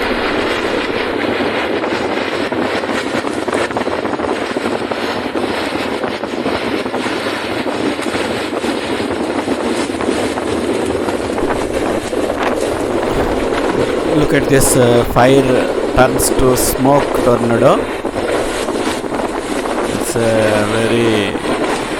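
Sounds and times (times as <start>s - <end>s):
roar of wind around fire whirl: 0.0s - 1.2s, 11.2s - 21.9s.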